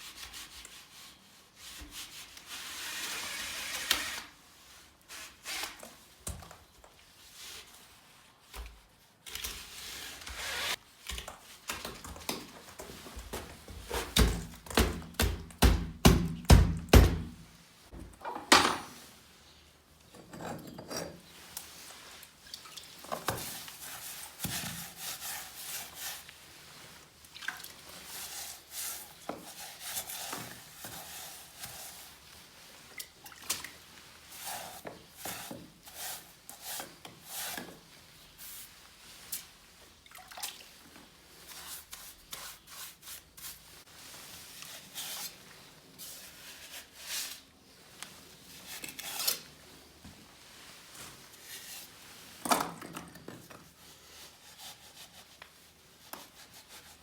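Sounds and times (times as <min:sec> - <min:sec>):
hand tool scraping masonry: 0:09.5 - 0:10.8, 0:20.2 - 0:21.4.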